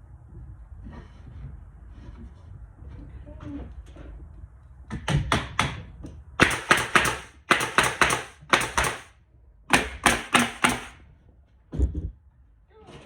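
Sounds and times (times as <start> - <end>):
pneumatic stapler firing: 6.4 - 9.1, 9.7 - 11.0.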